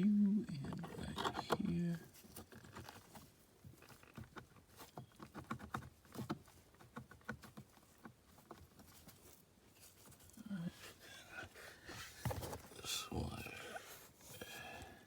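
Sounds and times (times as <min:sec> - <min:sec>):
hands handling cables and connectors: 0:11.2 - 0:14.6.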